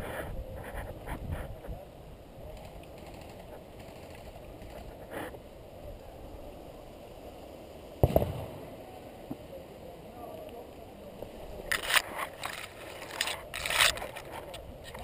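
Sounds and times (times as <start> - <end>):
camera handling rustle: 11.7 - 15.0.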